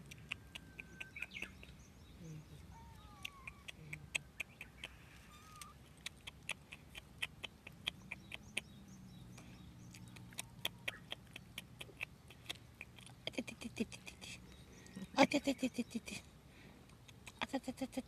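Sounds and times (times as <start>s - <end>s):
bird chirping: 0.0s - 16.3s
kittens crunching food: 3.0s - 8.6s, 9.4s - 13.4s, 16.9s - 17.5s.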